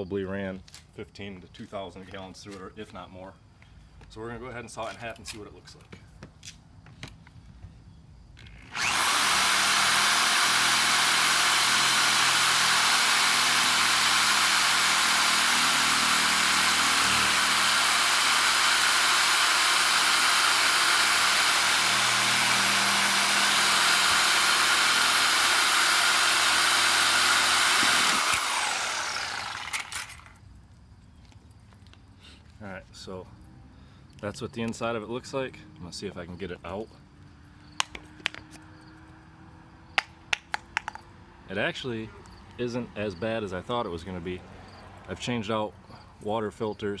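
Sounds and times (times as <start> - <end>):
power saw cutting plastic: 8.4 - 30.4.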